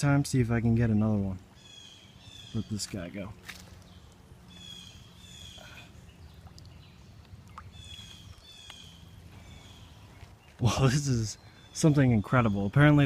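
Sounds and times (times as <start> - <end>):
birds calling: 0.6 - 13.0.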